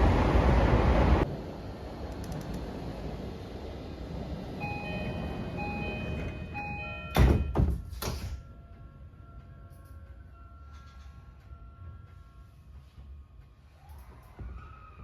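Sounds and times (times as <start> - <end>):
quiet train hum: 0.0 - 15.0.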